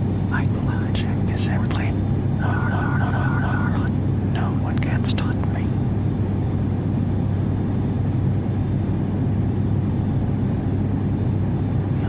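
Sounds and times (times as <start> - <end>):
airplane engines droning in cabin: 0.0 - 12.0.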